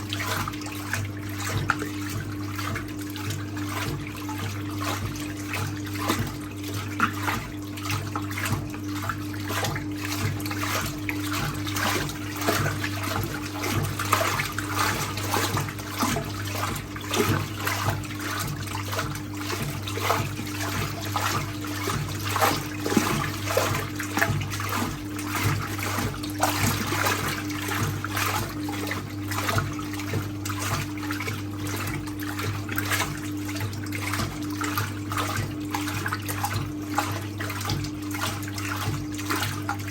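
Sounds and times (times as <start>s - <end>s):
washing machine motor humming: 0.0s - 39.9s
water sloshing in washing machine: 0.0s - 39.9s.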